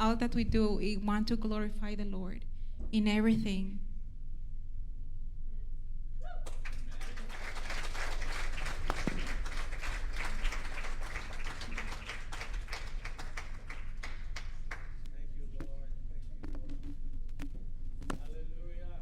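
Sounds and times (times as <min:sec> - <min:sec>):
group of people clapping: 0:06.4 - 0:15.2.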